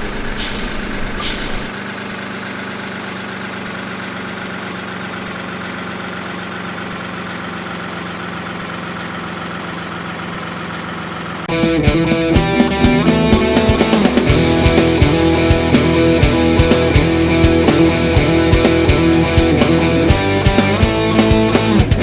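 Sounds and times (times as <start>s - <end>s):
truck engine idling: 0.0s - 22.0s
air brake hisses: 0.2s - 1.7s.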